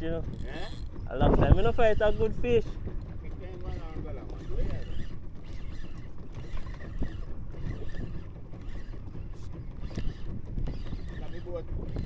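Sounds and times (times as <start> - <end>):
small boat engine rumble: 0.0 - 12.0
wind buffeting microphone: 0.0 - 12.0.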